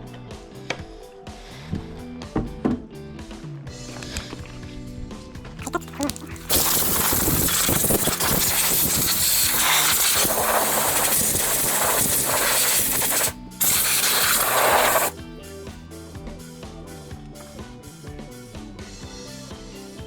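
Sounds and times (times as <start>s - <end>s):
loud hissing spray: 6.2s - 15.1s.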